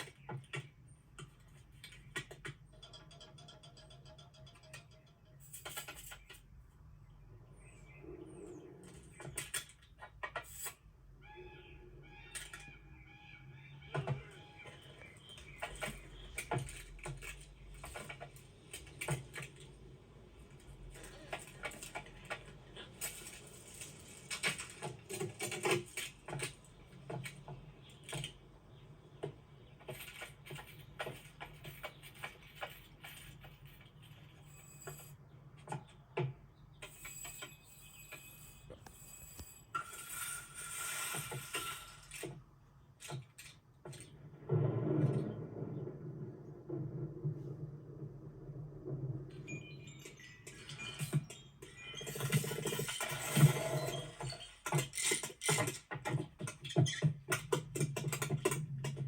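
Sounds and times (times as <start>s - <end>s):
small clicks taps and knocks: 0.0s - 6.7s, 54.4s - 59.0s.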